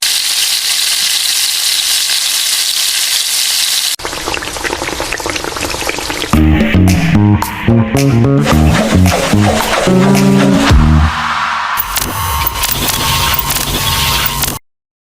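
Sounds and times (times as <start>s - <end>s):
oil sizzling in a pan: 0.0s - 6.3s
crackling popping frying: 0.0s - 6.6s
guitar music: 6.4s - 11.3s.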